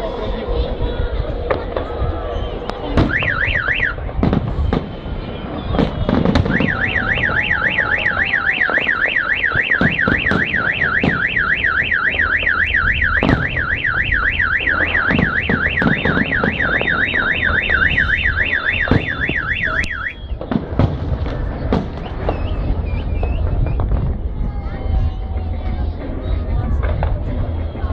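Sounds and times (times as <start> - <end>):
firework bangs: 1.4 - 27.6
car alarm siren warbling: 3.0 - 4.0, 6.4 - 20.2.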